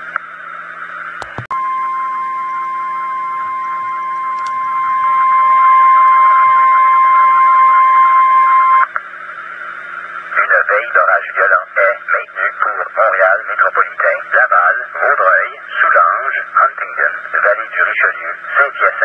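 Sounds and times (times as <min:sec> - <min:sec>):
radio receiver hiss and hum: 0:00.0 - 0:19.0
clicks: 0:01.2 - 0:01.5, 0:04.1 - 0:04.6
high steady beep: 0:01.5 - 0:08.9.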